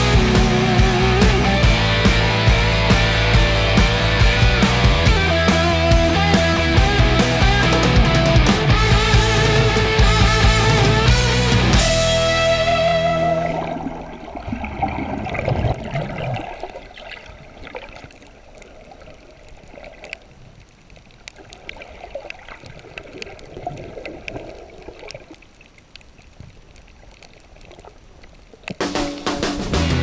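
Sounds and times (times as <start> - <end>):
water sloshing and trickling: 13.2 - 28.8.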